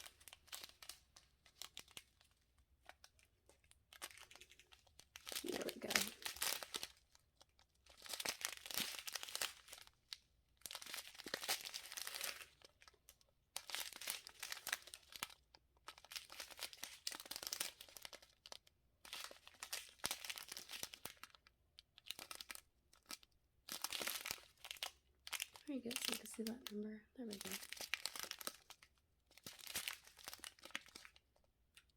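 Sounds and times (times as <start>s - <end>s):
plastic bags crinkling: 0.0s - 21.4s, 22.0s - 31.9s.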